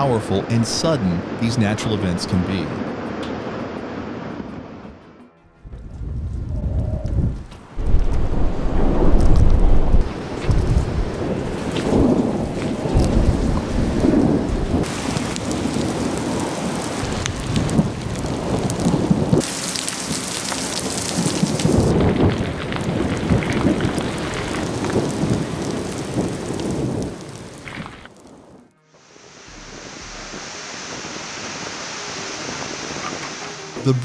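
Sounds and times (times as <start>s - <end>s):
low rumbles: 4.5s - 28.8s, 29.4s - 31.5s
heavy rain hissing: 7.7s - 34.0s.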